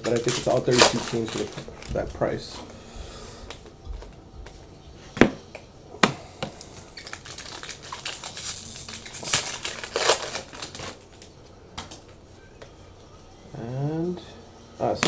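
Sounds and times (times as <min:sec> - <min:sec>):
wrapper crinkling: 0:00.0 - 0:02.2, 0:06.9 - 0:11.4.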